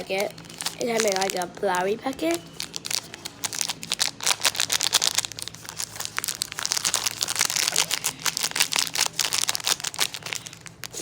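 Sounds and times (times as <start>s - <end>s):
plastic wrapper crinkling: 0.0s - 11.0s.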